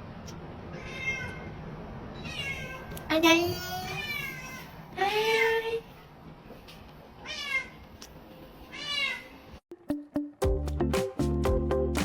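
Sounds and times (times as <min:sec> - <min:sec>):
cat meowing: 0:00.7 - 0:01.5, 0:02.2 - 0:03.0, 0:03.8 - 0:04.8, 0:07.2 - 0:07.8, 0:08.7 - 0:09.4
music: 0:09.7 - 0:12.0.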